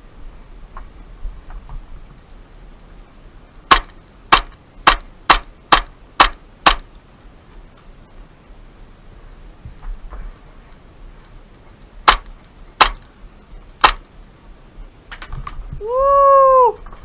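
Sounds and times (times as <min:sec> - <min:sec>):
airsoft gun shots: 0:03.7 - 0:06.9, 0:12.0 - 0:13.1, 0:13.8 - 0:14.0.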